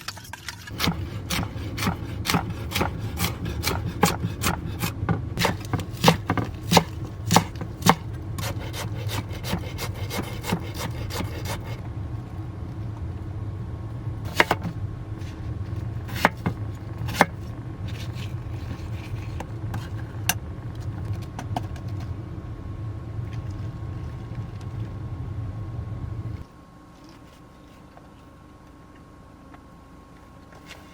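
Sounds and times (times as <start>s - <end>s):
steady low hum: 0.0s - 30.9s
knife chopping on wooden board: 0.8s - 11.8s, 14.3s - 14.7s, 16.1s - 17.4s.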